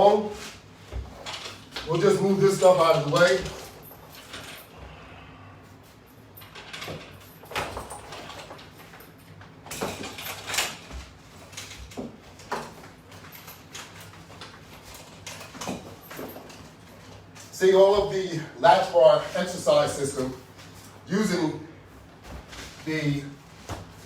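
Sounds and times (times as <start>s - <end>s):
exercise gear knocks and clatters: 6.4s - 17.5s.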